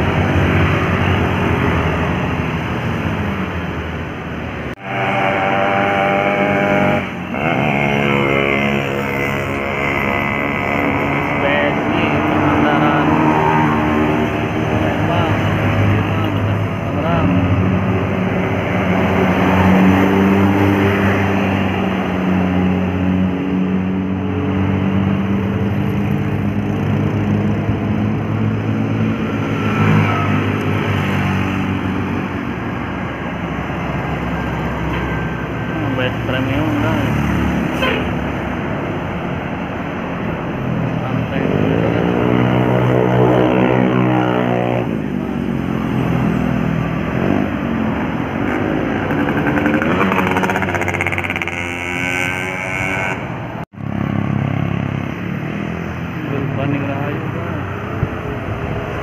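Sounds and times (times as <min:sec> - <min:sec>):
diesel engine drone: 0:00.0 - 0:59.0
engine pitch sliding up and down: 0:04.8 - 0:21.7, 0:41.1 - 0:53.6.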